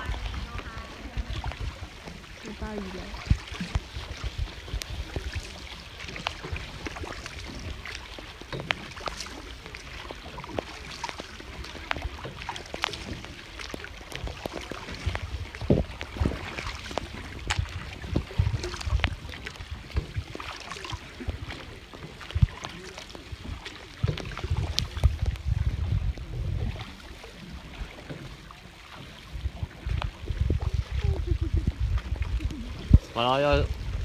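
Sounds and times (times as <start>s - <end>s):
low rumbles: 0.0s - 5.4s, 29.4s - 34.0s
boat knocks: 0.0s - 34.0s
water splashing and lapping: 0.0s - 34.0s.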